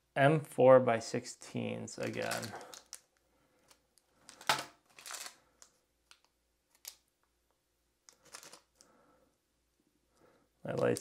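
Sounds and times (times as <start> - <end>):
small screws clicking and rustling: 2.0 - 7.0, 8.1 - 8.8.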